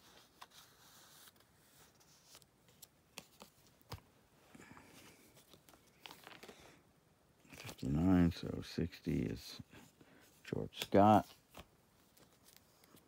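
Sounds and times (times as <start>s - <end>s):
cards sliding in plastic sleeves: 0.0s - 4.1s, 4.8s - 6.8s, 9.7s - 13.0s.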